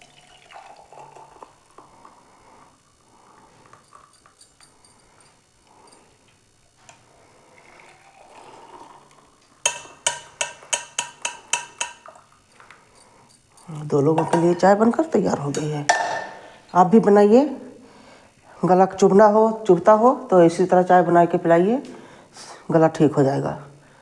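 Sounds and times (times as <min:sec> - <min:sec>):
tea pouring: 0:00.0 - 0:06.1, 0:07.0 - 0:15.6
metal strainer clinking on cup: 0:03.7 - 0:06.0, 0:09.7 - 0:14.7.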